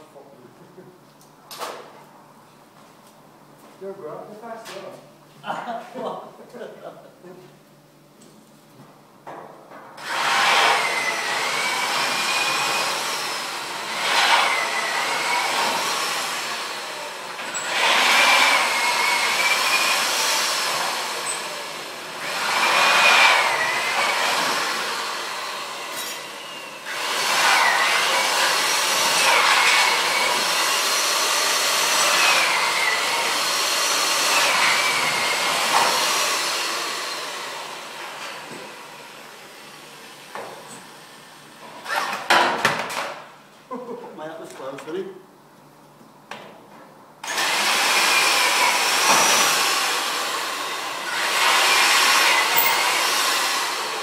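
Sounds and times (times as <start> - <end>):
electric grinder on steel: 10.0 - 40.3, 47.2 - 54.0.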